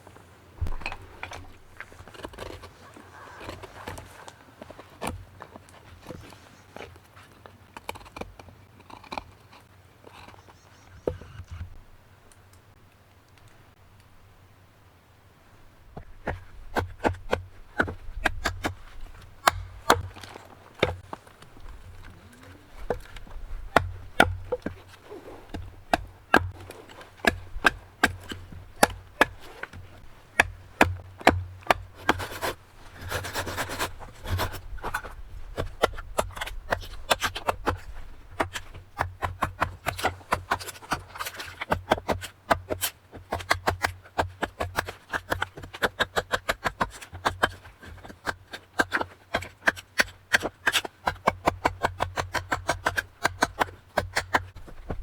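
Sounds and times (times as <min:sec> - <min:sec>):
blade scraping wood: 0:00.6 - 0:11.8, 0:16.2 - 0:55.0
blade cutting wood: 0:22.7 - 0:55.0.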